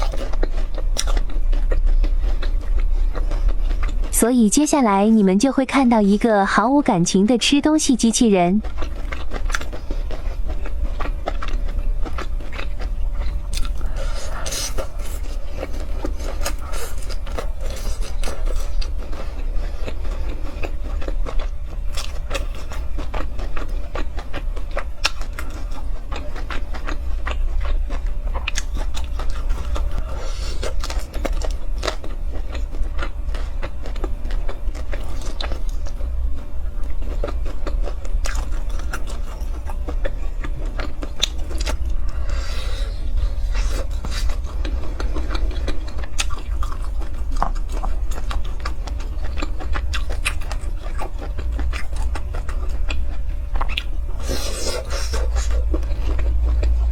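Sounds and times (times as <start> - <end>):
chewing and crunching: 0.0 - 6.7, 8.3 - 56.9
low hum: 0.0 - 56.9.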